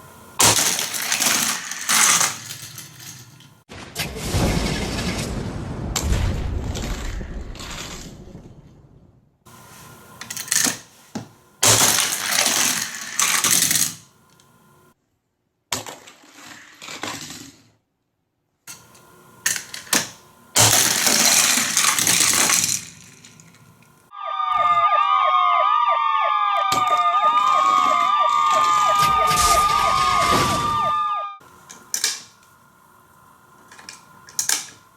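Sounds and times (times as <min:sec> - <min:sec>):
plastic toy clattering: 0:00.4 - 0:03.5, 0:11.6 - 0:14.0, 0:19.5 - 0:23.7, 0:33.7 - 0:34.8
siren-like wail: 0:24.1 - 0:31.4.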